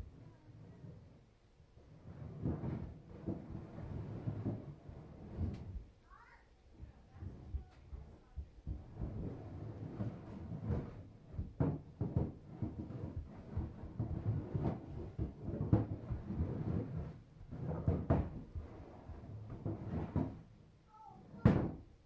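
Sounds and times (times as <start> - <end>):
thumping and knocking in attic: 6.8 - 9.4, 10.0 - 20.5.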